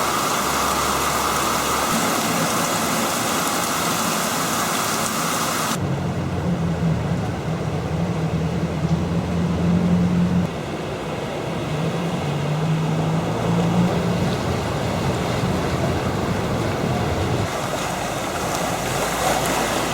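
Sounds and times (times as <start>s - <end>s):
rain falling: 0.0s - 19.9s.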